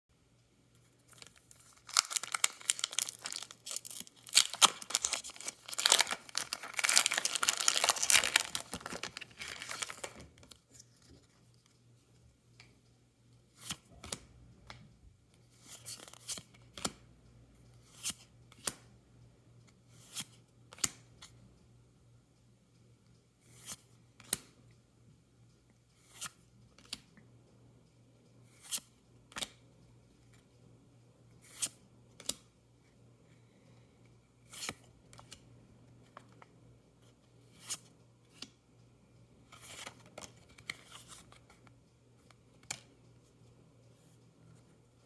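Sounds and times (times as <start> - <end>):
foil wrapper crinkling and tearing: 1.1 - 10.2.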